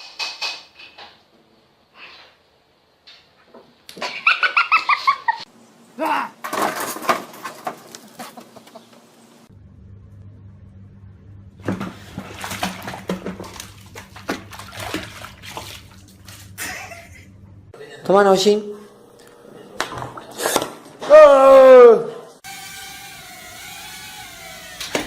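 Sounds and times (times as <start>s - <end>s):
steady low hum: 9.3s - 18.0s.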